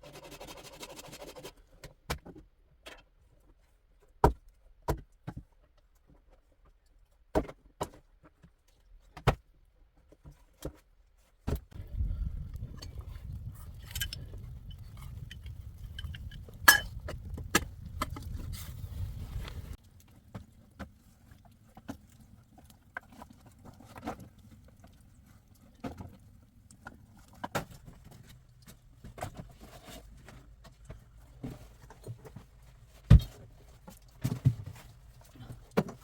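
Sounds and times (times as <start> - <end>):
low rumble: 11.8 - 19.8
clicks and clinks of hard objects: 13.7 - 18.3.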